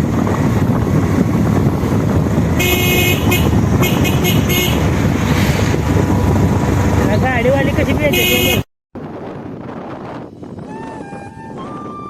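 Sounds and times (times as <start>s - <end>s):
wind rumble on microphone: 0.0s - 12.0s
vehicle horn toots: 2.6s - 5.0s, 8.1s - 8.6s.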